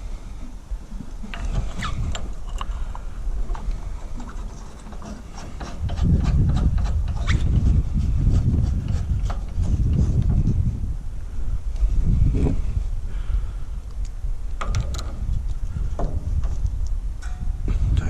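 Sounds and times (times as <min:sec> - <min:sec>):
wind rumbling on microphone: 0:00.0 - 0:18.0
clicks and scrapes of engine parts: 0:01.1 - 0:10.6, 0:14.0 - 0:17.4.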